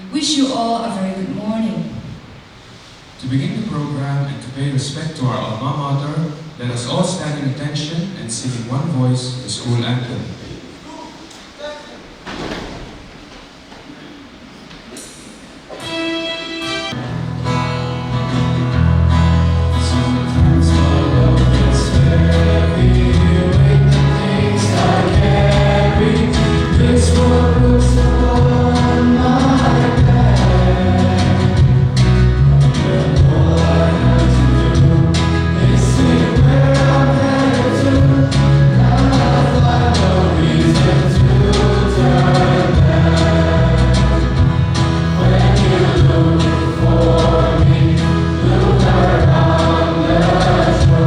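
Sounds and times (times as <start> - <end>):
instrumental accompaniment with bass: 15.8 - 51.0
choir singing: 19.7 - 51.0.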